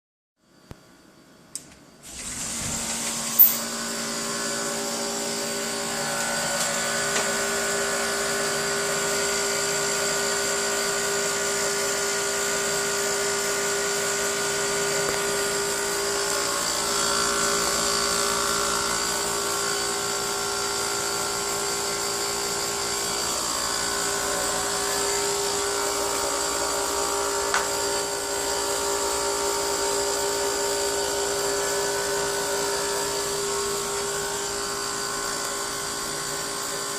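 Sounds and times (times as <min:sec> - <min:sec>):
air conditioner motor whine: 0:00.4 - 0:36.9.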